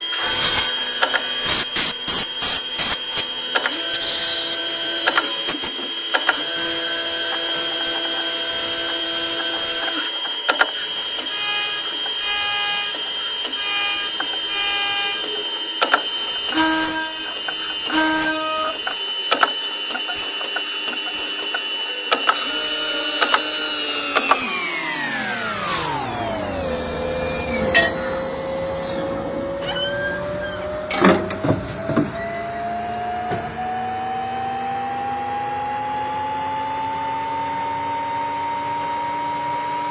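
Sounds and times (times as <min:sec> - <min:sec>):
milling machine whine: 0:00.0 - 0:39.9
motor clicks and bursts: 0:00.1 - 0:27.7.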